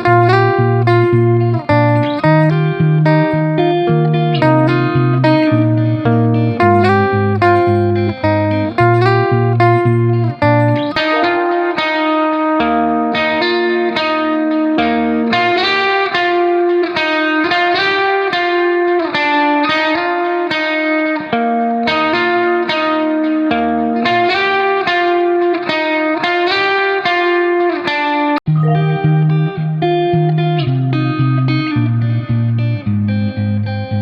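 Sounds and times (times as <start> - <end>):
plucked guitar-like notes: 0.0 - 27.8, 28.5 - 34.0
held low notes: 4.4 - 11.6.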